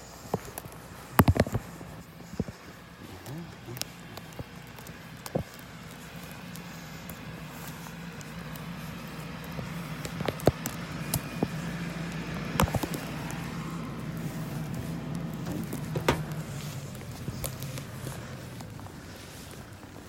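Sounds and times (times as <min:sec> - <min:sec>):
footsteps in snow: 0:00.0 - 0:20.0
steady low hum: 0:00.0 - 0:20.0
sharp snaps: 0:00.2 - 0:19.2.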